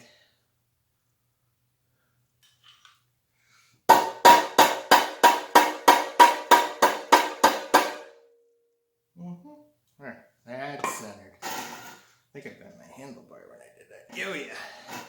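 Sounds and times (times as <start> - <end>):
hammer blows on metal bicycle frame: 3.9 - 8.2.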